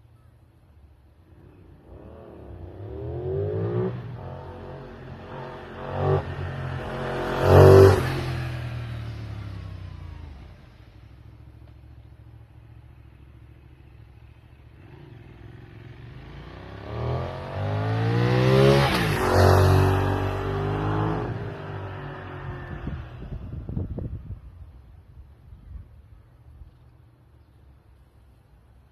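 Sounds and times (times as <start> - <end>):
motorcycle riding by: 1.2 - 24.2.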